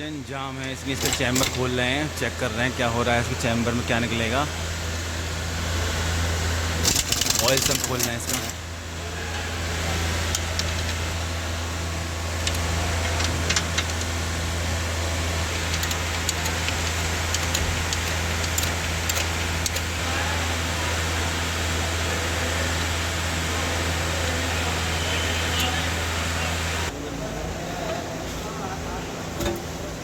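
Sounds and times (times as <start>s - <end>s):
low mechanical hum: 0.0s - 30.0s
hand tools clicking on metal: 0.6s - 2.0s, 6.8s - 8.6s, 10.1s - 11.2s, 12.3s - 20.0s.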